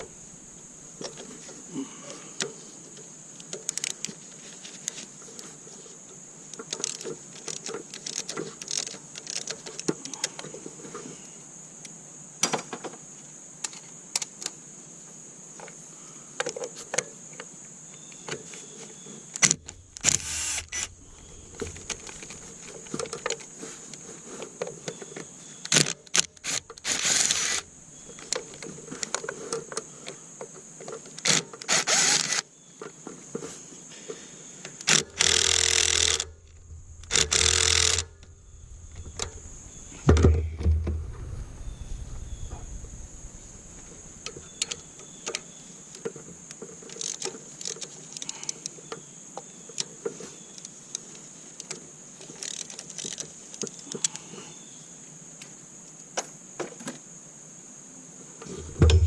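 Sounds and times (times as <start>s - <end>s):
short rasping bursts: 19.9s - 21.4s, 26.4s - 27.7s, 31.7s - 32.4s, 34.9s - 38.3s.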